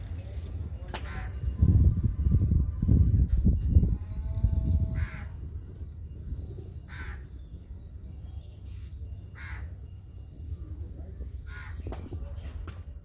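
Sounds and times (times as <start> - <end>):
crows cawing: 5.0 - 5.3, 6.9 - 7.2, 9.4 - 9.7, 11.5 - 11.8.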